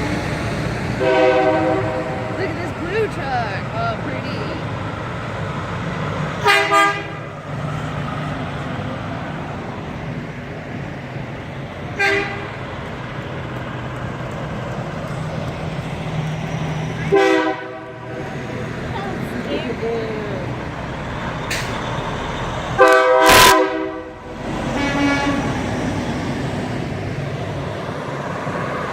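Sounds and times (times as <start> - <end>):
diesel engines droning: 0.0 - 28.9
truck air horn blasts: 1.0 - 2.5, 6.4 - 7.3, 12.0 - 12.5, 17.0 - 18.2, 22.8 - 25.5.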